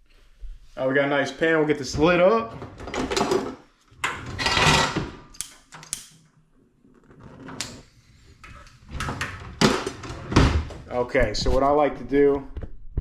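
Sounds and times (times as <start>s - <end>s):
stove burner being lit: 5.3s - 6.2s.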